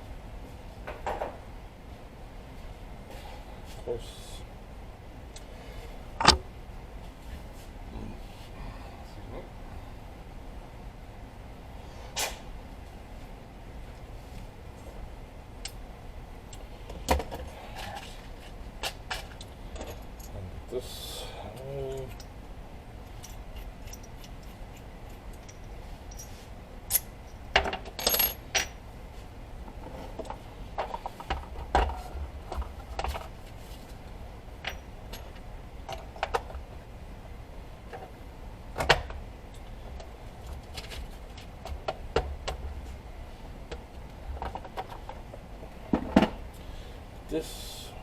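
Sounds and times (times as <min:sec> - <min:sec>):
small metal parts clinking: 0:23.1 - 0:28.8.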